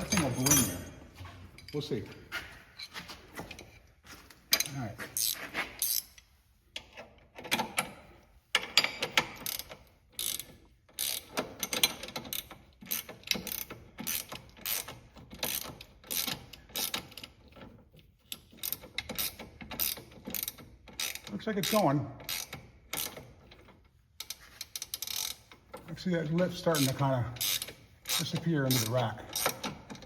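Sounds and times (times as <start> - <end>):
ratchet wrench clicking: 8.6 - 17.5, 18.3 - 25.6, 26.5 - 30.0.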